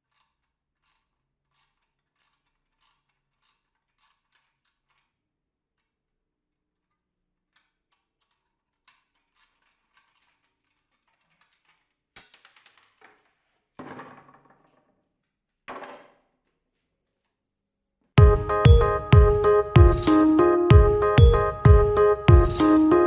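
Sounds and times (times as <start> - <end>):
small parts clicking: 0.0 - 5.1, 7.5 - 13.5.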